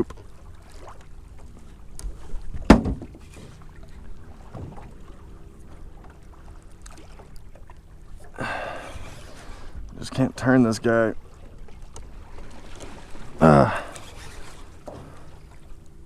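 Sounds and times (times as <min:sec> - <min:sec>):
faint steady hum: 0:00.0 - 0:16.0
water sounds: 0:00.0 - 0:16.0
knocks on boat: 0:02.6 - 0:03.5, 0:04.5 - 0:04.9.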